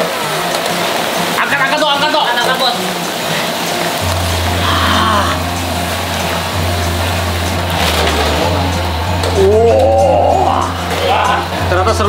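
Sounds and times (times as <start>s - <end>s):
background music: 0.0s - 12.0s
low steady hum: 4.0s - 11.1s.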